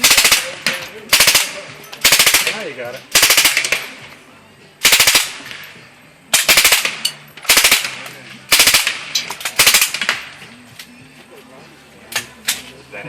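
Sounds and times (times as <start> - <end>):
rifle firing rapid bursts: 0.0 - 3.9, 4.8 - 5.4, 6.3 - 10.3
gunshot echo: 6.4 - 10.4.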